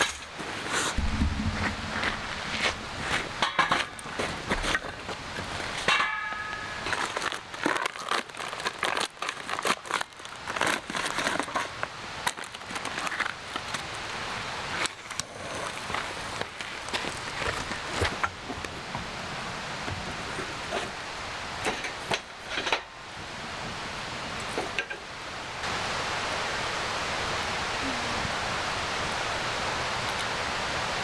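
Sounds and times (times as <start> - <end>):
crinkling and crackling: 0.0 - 23.0.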